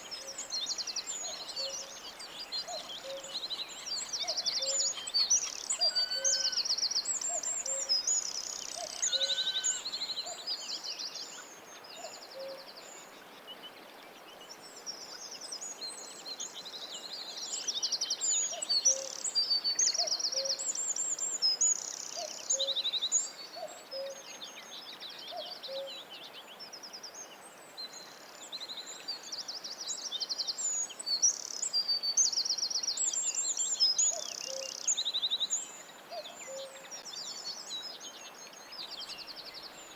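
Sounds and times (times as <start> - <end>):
birds chirping and trilling: 0.0 - 10.6.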